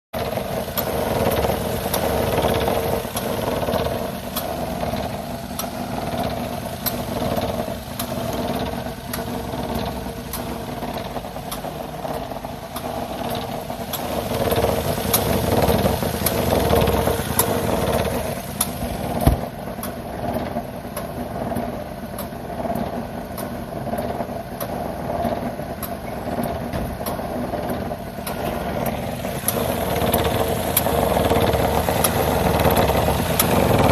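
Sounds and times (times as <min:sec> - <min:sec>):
car engine idling: 0:00.1 - 0:33.9
engine knock: 0:00.1 - 0:33.9
repeated clicking: 0:03.2 - 0:14.2, 0:18.6 - 0:33.9.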